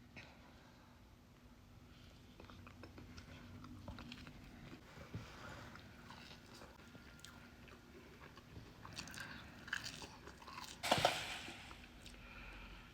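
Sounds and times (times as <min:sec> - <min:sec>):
noisy breath: 0:11.3 - 0:12.9.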